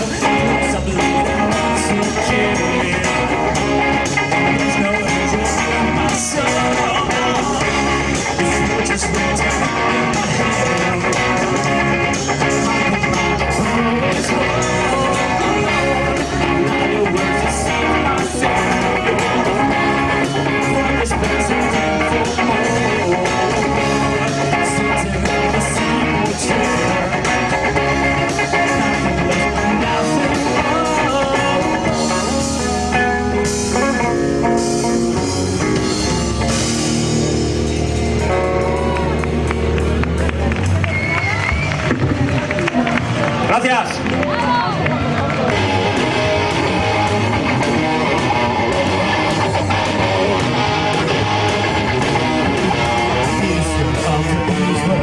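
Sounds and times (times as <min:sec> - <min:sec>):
electric guitar: 0:00.0 - 0:55.0
rock band playing: 0:00.0 - 0:55.0
drum beat: 0:33.4 - 0:43.8.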